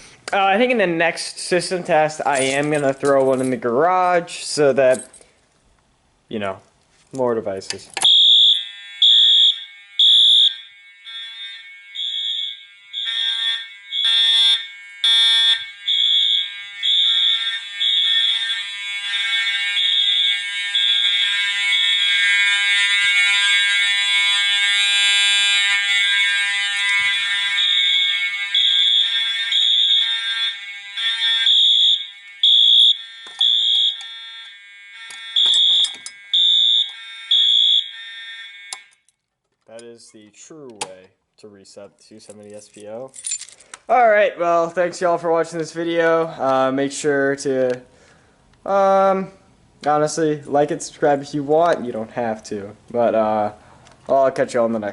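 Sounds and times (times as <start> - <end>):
fire alarm horns pulsing: 8.0 - 39.1.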